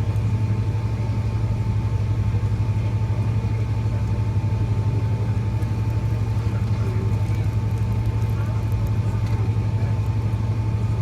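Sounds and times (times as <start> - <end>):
aircraft cabin engine drone: 0.0 - 11.0.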